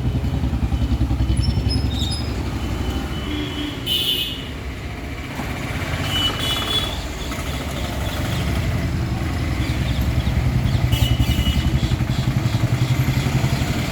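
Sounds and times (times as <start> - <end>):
vehicle engine running: 5.4 - 13.9.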